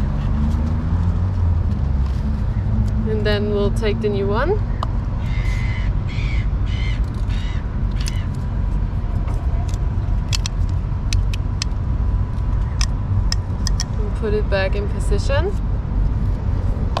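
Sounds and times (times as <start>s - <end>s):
low rumble: 0.0s - 17.0s
plastic and metal parts clicking: 9.3s - 11.8s, 12.4s - 13.9s.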